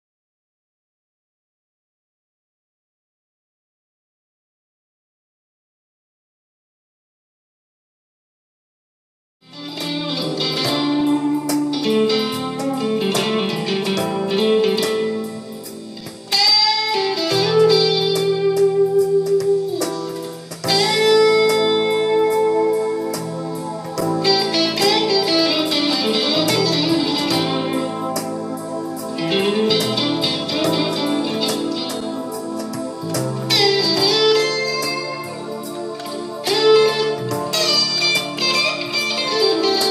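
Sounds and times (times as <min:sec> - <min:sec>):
electric guitar picked notes: 0:09.5 - 0:39.9
guitar note bent upward: 0:16.0 - 0:39.9.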